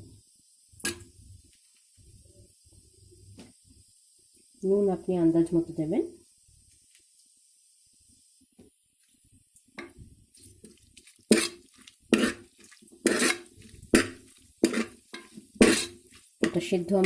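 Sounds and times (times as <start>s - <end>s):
spoon knocking against metal pot: 9.8s - 10.0s, 14.0s - 16.7s
metal spoon scraping pot: 9.8s - 17.0s.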